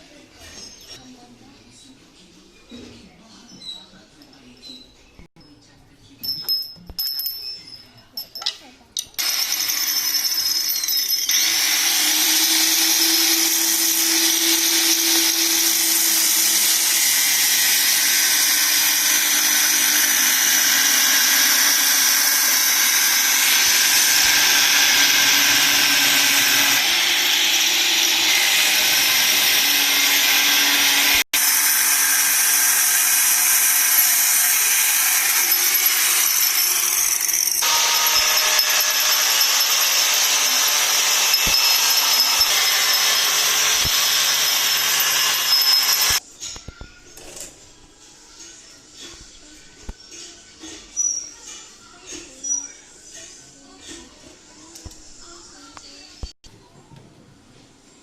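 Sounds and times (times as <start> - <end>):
electric power tool running: 9.2 - 10.7, 11.3 - 46.2.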